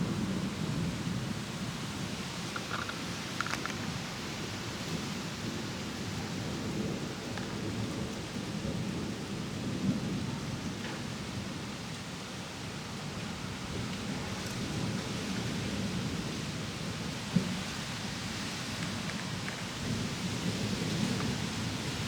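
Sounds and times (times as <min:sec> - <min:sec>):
steady rushing hiss: 0:00.6 - 0:06.1.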